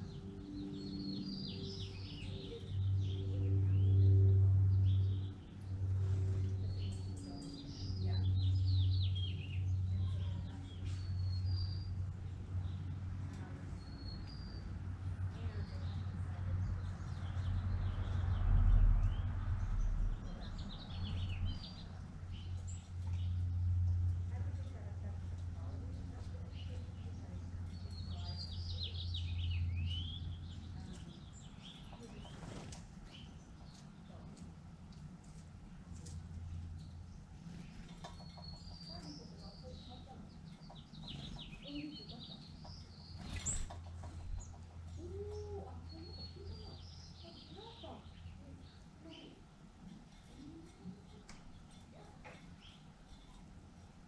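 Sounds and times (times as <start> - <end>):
low hum: 0.0 - 32.1
songbirds chirping and singing: 0.0 - 54.0.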